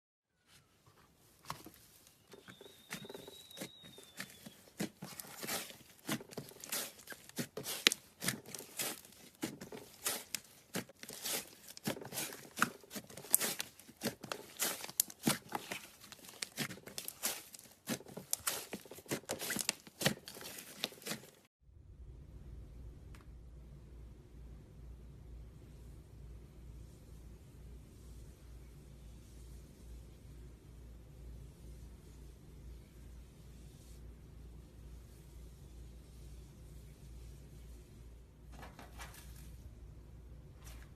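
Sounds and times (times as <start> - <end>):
slime crackling and popping: 3.0 - 21.4.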